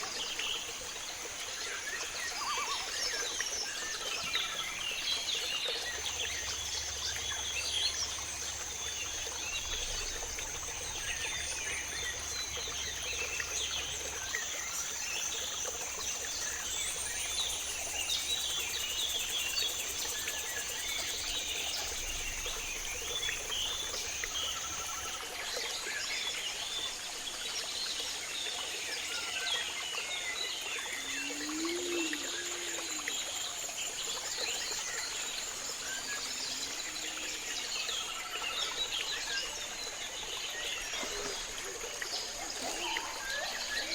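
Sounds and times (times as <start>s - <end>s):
low animal call: 31.0s - 33.3s.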